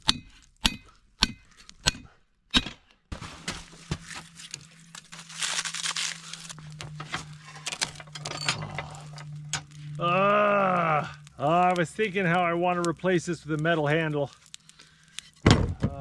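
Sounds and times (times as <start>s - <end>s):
burning charcoal crackling: 0.0s - 16.0s
charcoal chunks clinking: 0.0s - 16.0s
blower fan humming: 3.2s - 15.1s.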